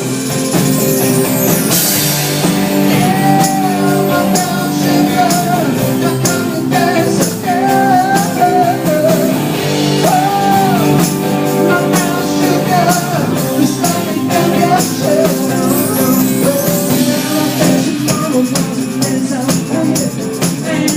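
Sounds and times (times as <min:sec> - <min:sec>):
guitar chords: 0:00.0 - 0:19.7
steady drum beat: 0:00.0 - 0:20.9
person singing long notes: 0:02.9 - 0:09.4, 0:10.0 - 0:19.7.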